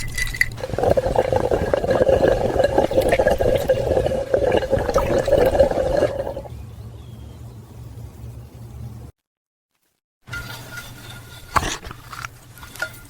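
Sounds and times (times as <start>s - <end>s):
running liquid rushing: 0.5s - 6.5s.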